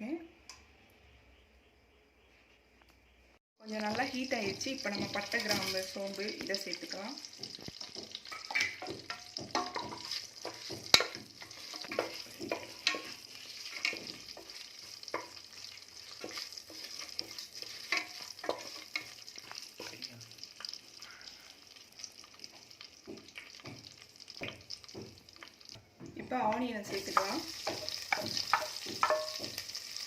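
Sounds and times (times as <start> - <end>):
spices sizzling in hot oil: 3.6 - 30.0
spoon scraping a pot: 7.8 - 19.2, 26.9 - 29.7.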